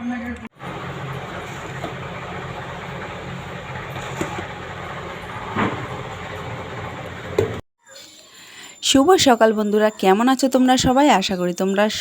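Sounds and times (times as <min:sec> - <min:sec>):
low mechanical hum: 0:00.0 - 0:07.6.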